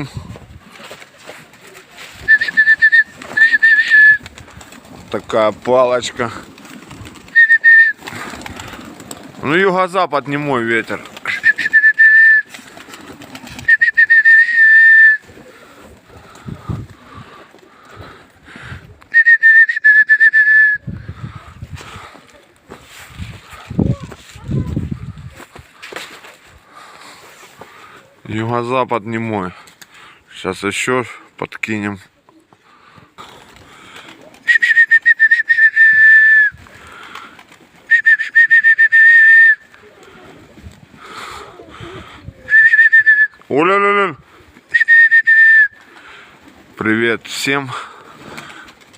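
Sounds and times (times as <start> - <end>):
shrill whistle blasts: 2.3 - 4.2, 7.3 - 8.0, 13.6 - 15.2, 44.7 - 45.8
loud shrill whistling: 7.3 - 8.0.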